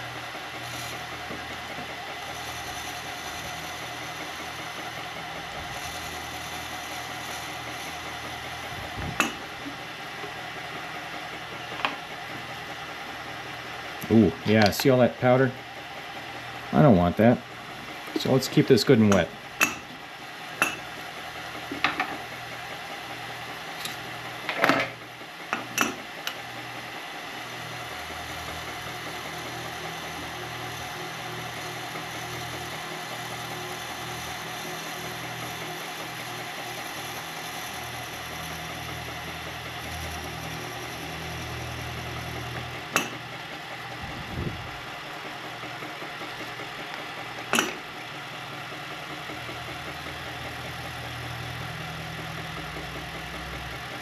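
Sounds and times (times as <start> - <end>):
milling machine cutting: 0.0 - 54.0
sharp clicks and knocks: 19.1 - 20.0, 21.6 - 22.2, 45.8 - 47.9.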